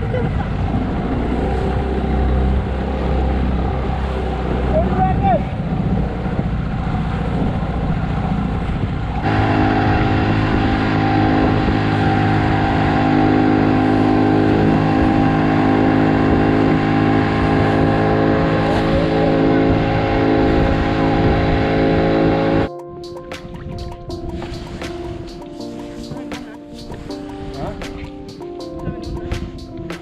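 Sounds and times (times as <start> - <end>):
outboard engine running: 0.0 - 22.7.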